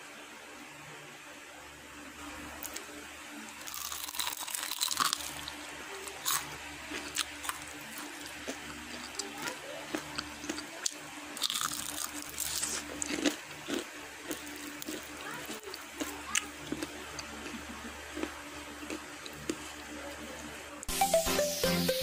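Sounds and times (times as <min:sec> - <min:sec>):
faint steady hum: 0:00.0 - 0:22.0
crinkling and crunching: 0:03.6 - 0:17.6.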